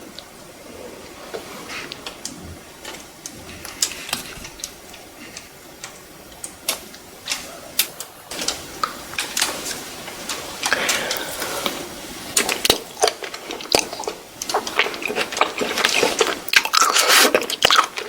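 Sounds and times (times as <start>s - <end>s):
close chewing and mouth sounds: 0.9s - 18.0s.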